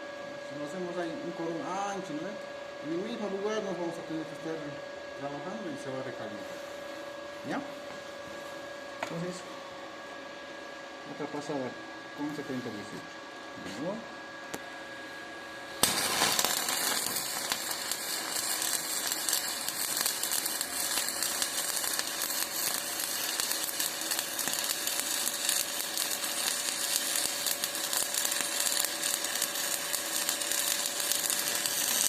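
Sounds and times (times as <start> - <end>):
welding arc crackling: 15.7 - 32.0.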